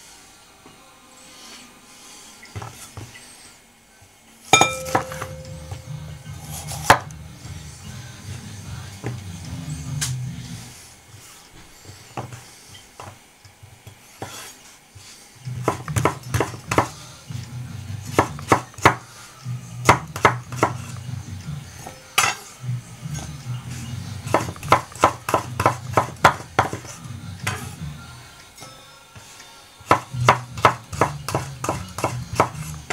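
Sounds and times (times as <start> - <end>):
low steady hum: 4.5 - 10.8.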